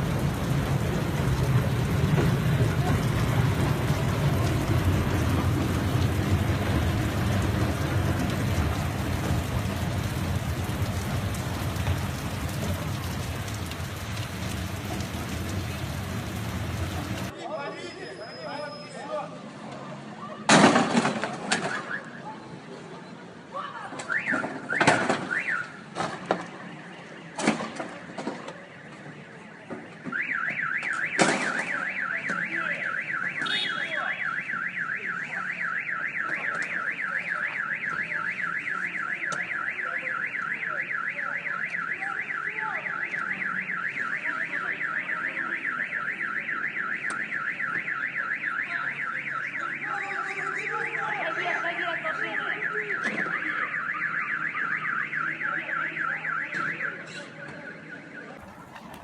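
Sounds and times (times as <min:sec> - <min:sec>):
car alarm warbling siren: 0:24.1 - 0:25.8, 0:30.1 - 0:57.1.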